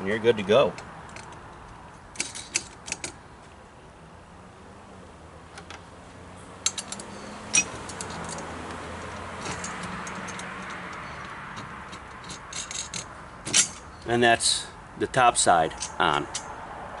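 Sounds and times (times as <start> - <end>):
metal clicks of nuts and bolts: 0.7 - 3.2, 6.6 - 14.2, 15.7 - 16.6.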